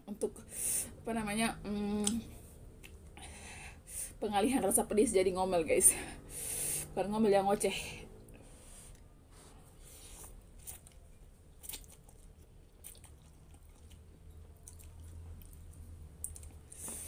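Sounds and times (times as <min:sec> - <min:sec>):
person chewing noodles: 0:08.7 - 0:17.0.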